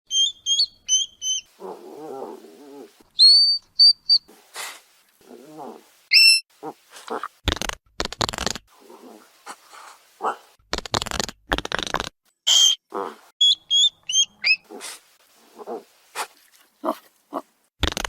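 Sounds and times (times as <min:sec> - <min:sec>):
hedgehog squeaks: 0:00.1 - 0:01.5, 0:03.2 - 0:04.3, 0:06.1 - 0:06.4, 0:12.5 - 0:12.8, 0:13.4 - 0:14.8
hedgehog huffs and snorts: 0:04.3 - 0:05.9, 0:14.6 - 0:17.6
hedgehog grunts: 0:12.9 - 0:13.3, 0:14.7 - 0:17.6.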